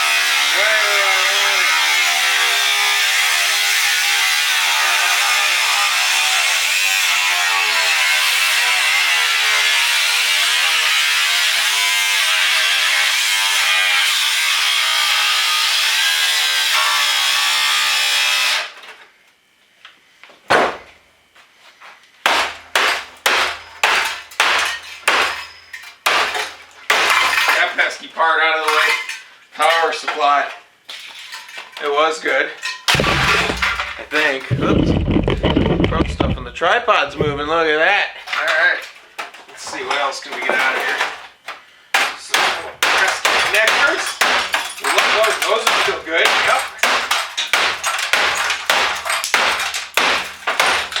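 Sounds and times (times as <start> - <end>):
sharp knocks: 32.9 - 37.7.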